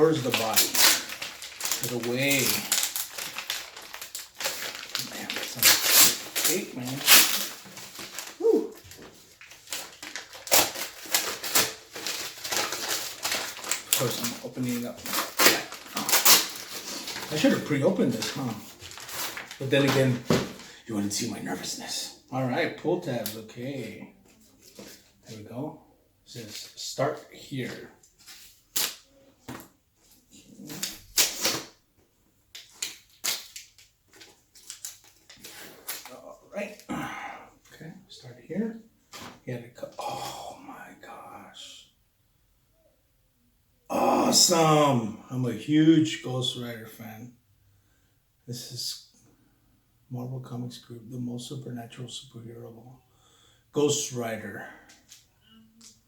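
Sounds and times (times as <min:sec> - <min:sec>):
cardboard rustling and scraping: 0:00.2 - 0:20.7.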